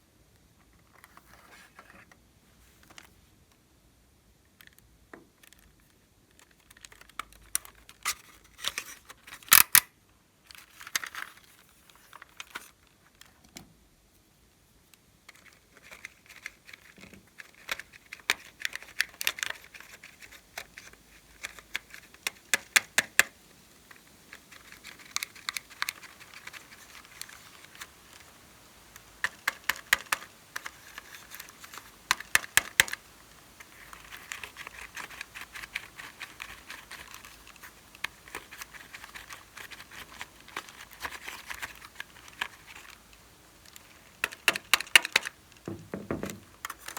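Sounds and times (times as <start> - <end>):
crackling: 14.9 - 46.9.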